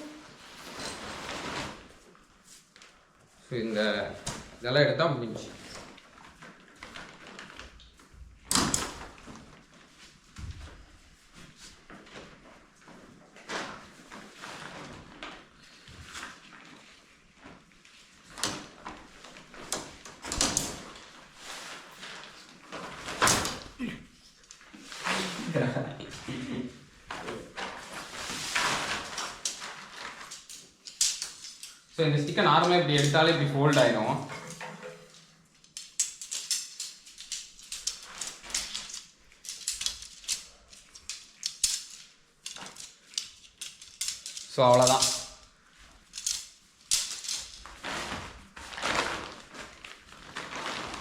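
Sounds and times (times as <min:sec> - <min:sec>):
tent fabric rustling scrapes: 0:00.0 - 0:02.7, 0:11.4 - 0:18.3, 0:20.8 - 0:23.2, 0:24.7 - 0:25.9, 0:27.4 - 0:30.4, 0:47.7 - 0:51.0
tent pole segments clicking: 0:35.1 - 0:45.4.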